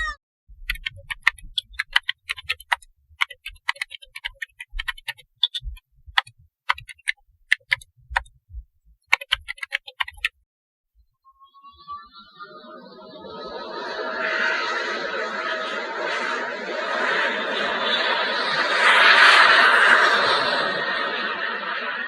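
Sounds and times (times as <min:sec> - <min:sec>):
sharp irregular clicks: 0:00.6 - 0:10.4
soft low thumps: 0:05.5 - 0:09.1.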